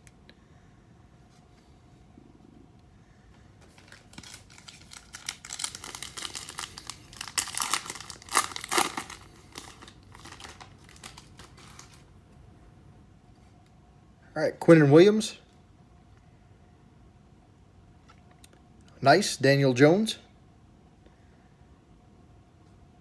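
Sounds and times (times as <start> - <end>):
foil wrapper crinkling and tearing: 3.6 - 12.1.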